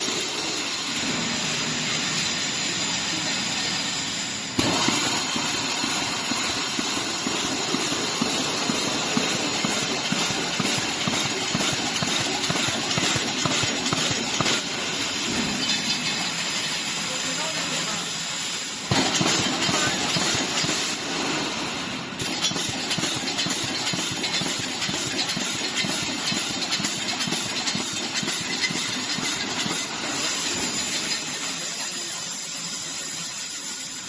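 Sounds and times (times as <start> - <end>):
steady hiss of air: 1.1 - 22.3
welding electrodes knocking: 4.6 - 16.0, 18.9 - 21.2.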